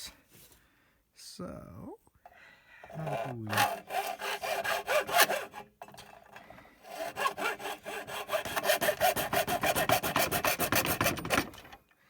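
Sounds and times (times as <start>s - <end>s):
saw cutting through plastic: 2.9s - 11.8s.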